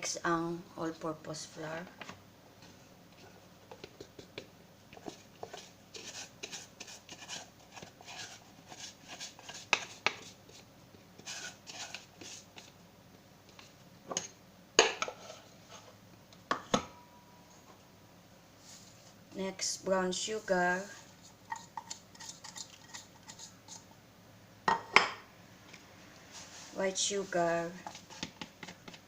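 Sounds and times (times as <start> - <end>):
utensils scraping a bowl: 5.0 - 10.3, 11.2 - 12.7, 21.0 - 23.9.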